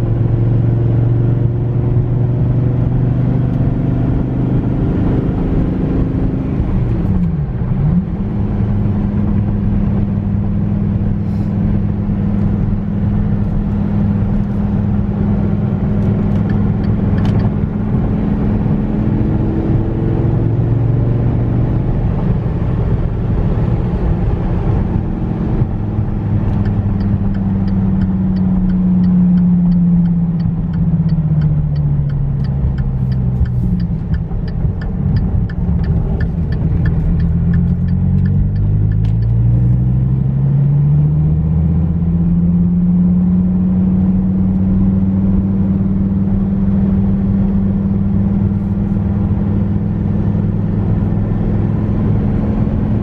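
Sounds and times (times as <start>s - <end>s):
sports car engine driving: 0.0s - 53.0s
light rapid ticking: 26.5s - 39.4s.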